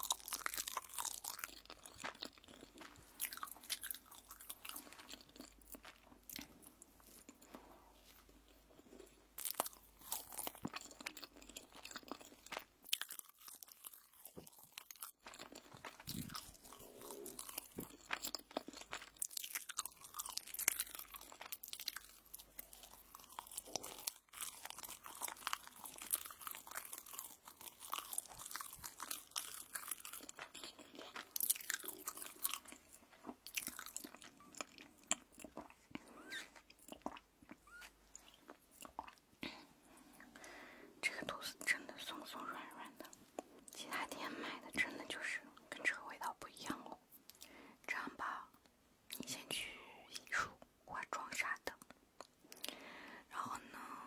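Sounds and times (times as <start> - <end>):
toast being bitten and chewed: 0.0 - 39.4.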